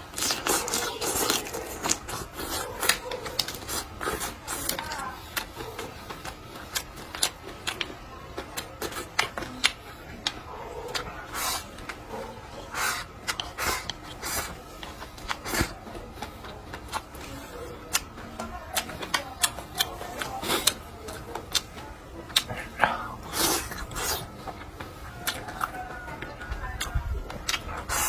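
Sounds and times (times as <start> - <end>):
eating sounds: 0.0 - 28.0.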